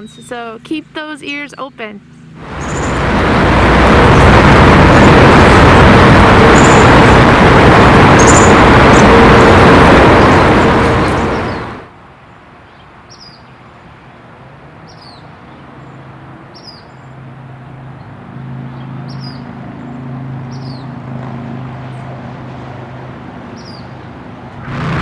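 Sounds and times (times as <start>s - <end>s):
vehicle engine hum: 2.4s - 11.9s, 18.4s - 25.0s.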